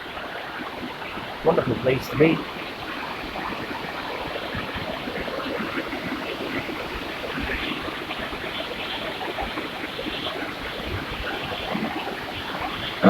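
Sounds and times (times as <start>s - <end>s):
waterfall splashing and rushing: 0.0s - 13.0s.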